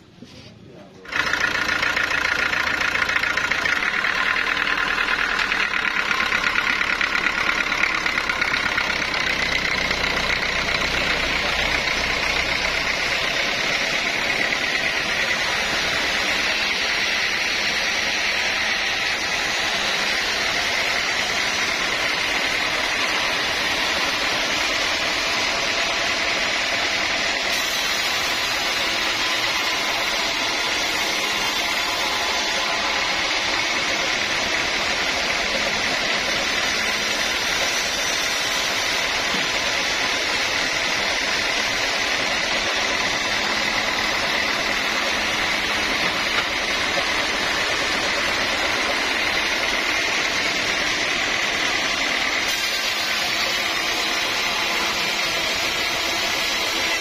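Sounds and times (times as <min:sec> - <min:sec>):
high mechanical whine: 0:00.0 - 0:57.0
sawmill machinery running: 0:00.0 - 0:57.0.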